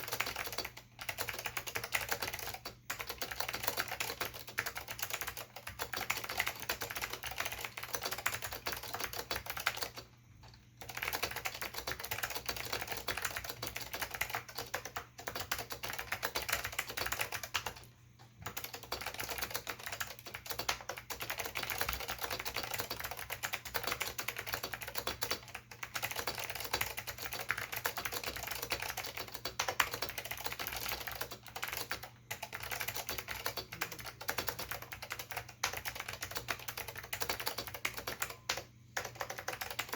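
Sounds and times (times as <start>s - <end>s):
clicky keyboard typing: 0.0s - 39.9s.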